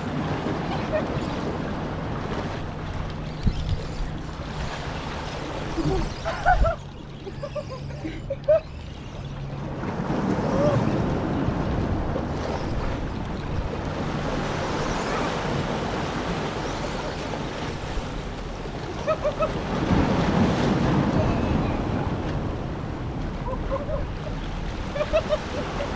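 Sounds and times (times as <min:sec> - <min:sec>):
ocean surf: 0:00.0 - 0:08.6, 0:09.2 - 0:25.9
low steady hum: 0:00.0 - 0:25.9
wind buffeting microphone: 0:09.2 - 0:16.4.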